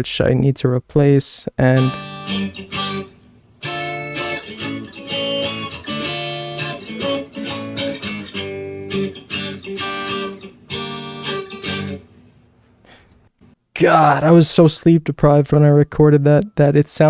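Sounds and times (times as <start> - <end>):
guitar plucked and strummed: 1.8 - 12.2.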